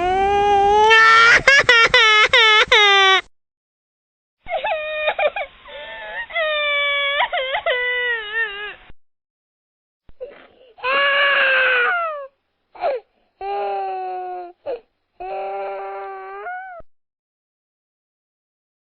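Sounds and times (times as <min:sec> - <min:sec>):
baby crying: 0:00.0 - 0:03.2, 0:04.5 - 0:08.8, 0:10.2 - 0:16.8.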